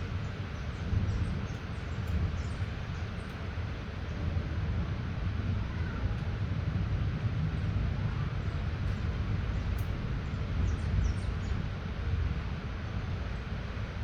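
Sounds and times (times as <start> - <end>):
continuous low rumble: 0.0 - 14.0
light rain falling: 0.0 - 14.0.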